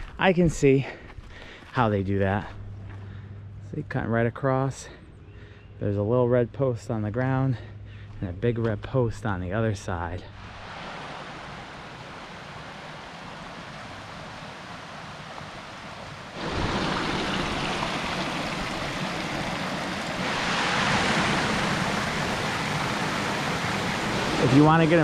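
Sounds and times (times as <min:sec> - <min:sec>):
waterfall rushing: 0:10.4 - 0:25.0.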